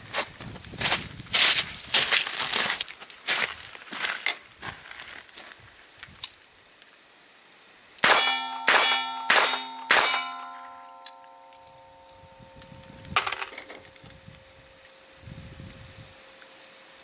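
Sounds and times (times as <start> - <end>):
metallic clangs ringing: 8.0 - 14.0.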